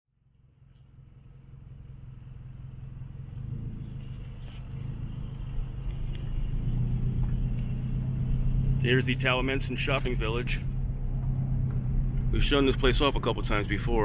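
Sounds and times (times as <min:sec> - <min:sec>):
car engine and road hum: 0:00.1 - 0:14.0.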